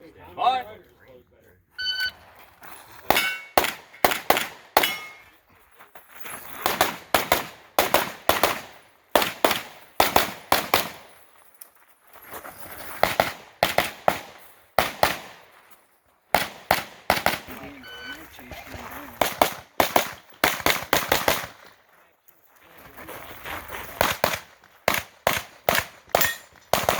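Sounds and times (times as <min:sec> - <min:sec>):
steel targets ringing: 0:03.1 - 0:03.6, 0:04.8 - 0:05.3
rapid gunshots: 0:06.6 - 0:11.0, 0:16.4 - 0:17.6, 0:19.2 - 0:21.6, 0:24.0 - 0:26.9.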